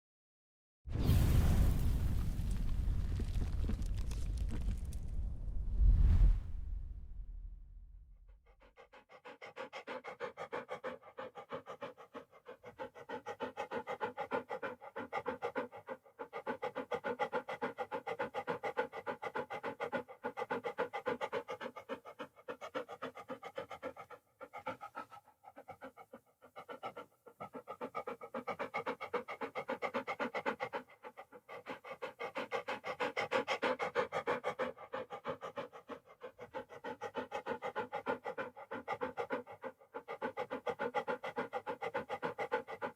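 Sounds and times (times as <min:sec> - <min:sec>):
dog panting rapidly: 0:08.5 - 0:42.9.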